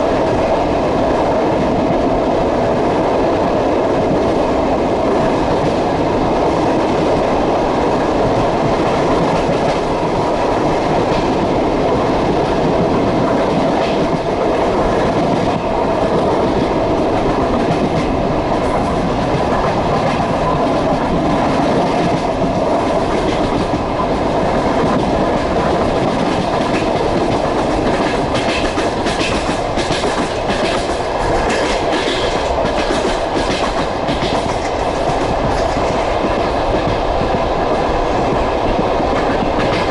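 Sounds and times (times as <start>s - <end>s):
train cars rumbling: 0.0s - 39.9s
wheels clacking over rail joints: 8.2s - 39.9s.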